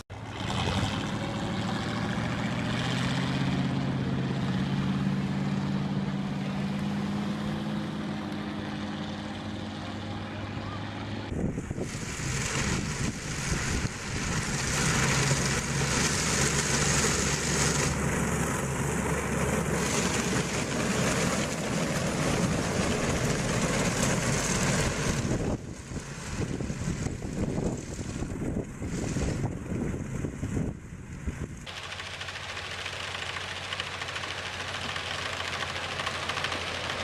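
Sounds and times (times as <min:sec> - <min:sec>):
vehicle engine running: 0:00.1 - 0:37.0
loud rushing hiss: 0:11.4 - 0:18.9.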